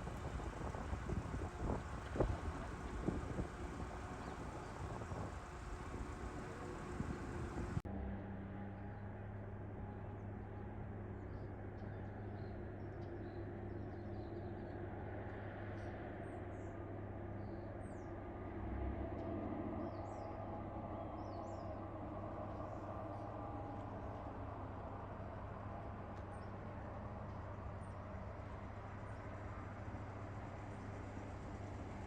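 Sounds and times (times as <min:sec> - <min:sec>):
low mechanical hum: 0:00.0 - 0:32.0.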